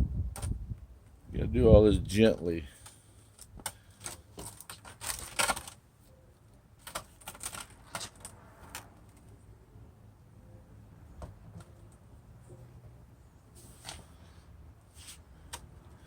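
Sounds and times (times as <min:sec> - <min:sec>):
plastic parts clicking and rattling: 0:02.8 - 0:05.8, 0:06.8 - 0:09.4.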